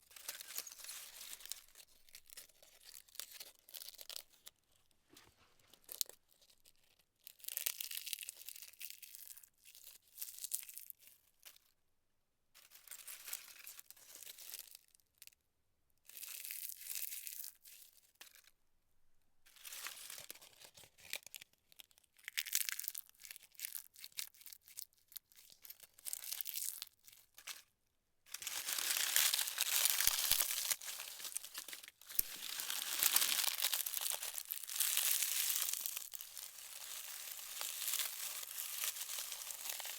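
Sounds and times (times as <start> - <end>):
dry leaves crunched by hand: 0.1 - 4.2, 28.3 - 39.9.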